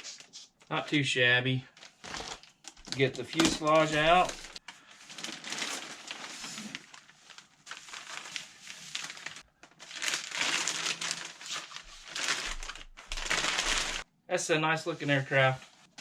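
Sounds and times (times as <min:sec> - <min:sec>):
plastic and foam packaging rustling: 0:01.8 - 0:14.0.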